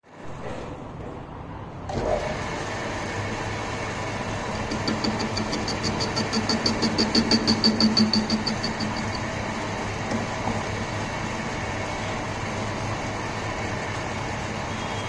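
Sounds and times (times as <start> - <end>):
lathe humming: 2.7 - 14.8
high-pitched ticking: 4.9 - 9.4.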